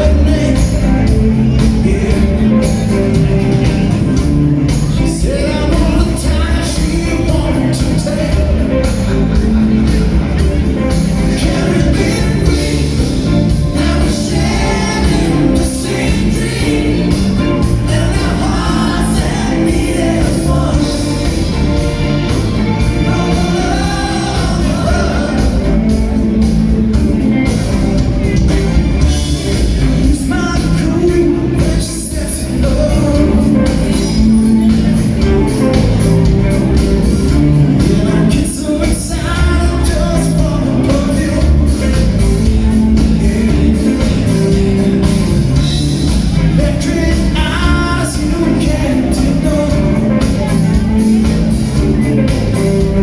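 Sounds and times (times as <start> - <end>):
pop-rock song with singing: 0.0 - 53.0.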